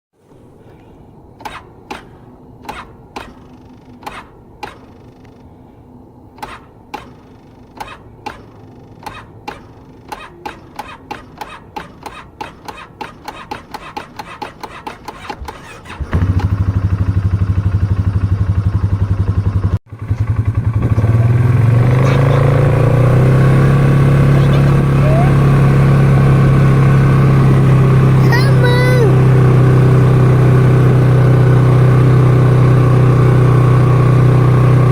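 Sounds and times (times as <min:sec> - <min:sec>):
starter clicking: 0:06.4 - 0:16.6
atv engine running: 0:14.2 - 0:34.9.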